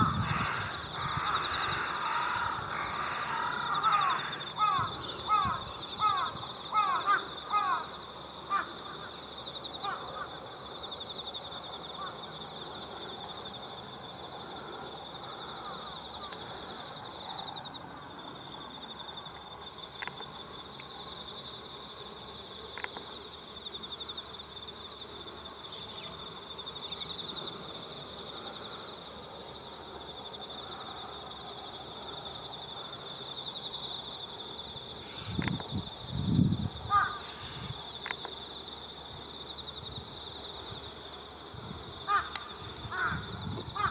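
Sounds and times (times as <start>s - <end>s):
crow cawing: 0.0s - 7.8s, 8.5s - 9.1s, 9.8s - 10.3s, 36.9s - 37.6s, 42.1s - 43.9s
crickets trilling: 0.0s - 43.9s
faint clicks: 35.4s - 35.7s.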